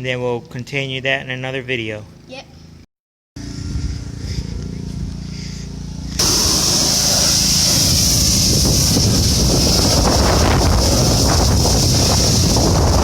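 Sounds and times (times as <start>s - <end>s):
vehicle engine rumble: 3.4s - 13.0s
wind hiss on microphone: 6.2s - 13.0s.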